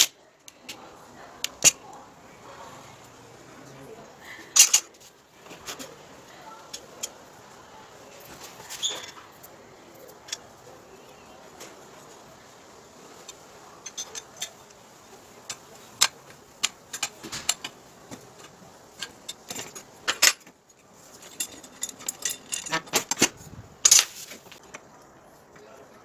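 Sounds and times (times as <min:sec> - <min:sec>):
metal parts clicking and clinking: 0:04.4 - 0:05.9, 0:08.5 - 0:10.6, 0:13.1 - 0:14.9, 0:15.5 - 0:24.6.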